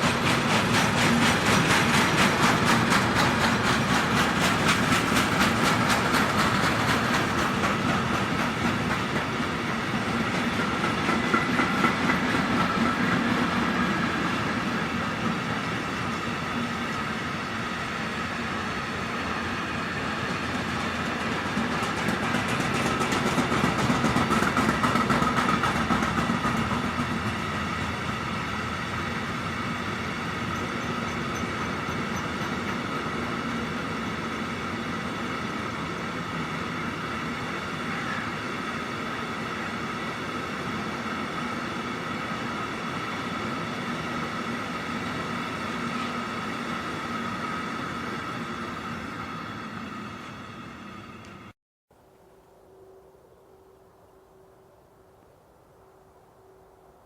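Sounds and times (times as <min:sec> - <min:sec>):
train wheels clattering over rail joints: 0:00.0 - 0:16.2, 0:19.4 - 0:37.4
train rolling rumble: 0:00.0 - 0:51.6.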